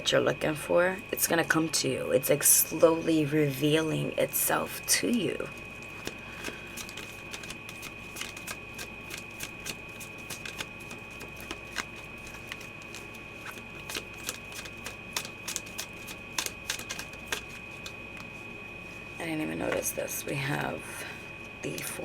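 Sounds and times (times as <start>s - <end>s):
cards being shuffled: 5.8s - 18.3s.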